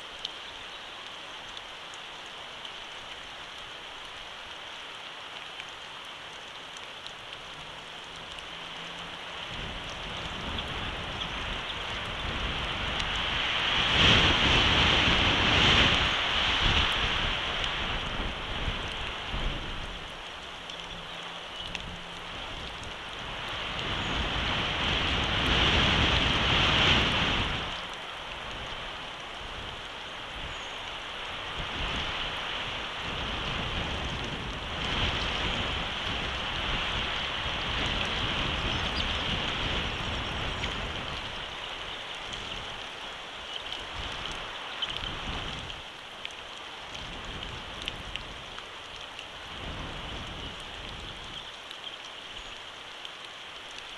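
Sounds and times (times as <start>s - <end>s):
steady rain falling: 0.0s - 53.9s
wind buffeting microphone: 9.3s - 20.2s, 21.6s - 30.6s, 31.4s - 42.9s, 43.8s - 45.8s, 49.5s - 51.4s.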